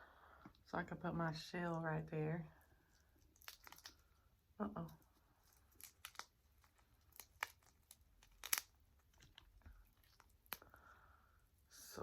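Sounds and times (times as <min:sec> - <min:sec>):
soft tearing of shrimp: 0:02.9 - 0:04.2, 0:05.0 - 0:10.9
shrimp shell crackling: 0:03.0 - 0:04.3, 0:05.4 - 0:10.9.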